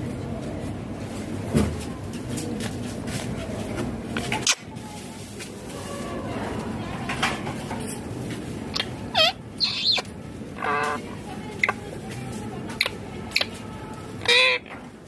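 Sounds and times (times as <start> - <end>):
parakeet chirping and squawking: 8.8 - 11.2, 14.2 - 14.8.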